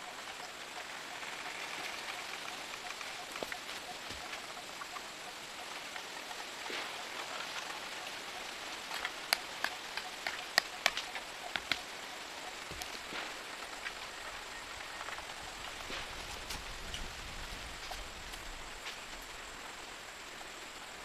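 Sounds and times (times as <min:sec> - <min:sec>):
sharp irregular taps: 0:09.2 - 0:11.8.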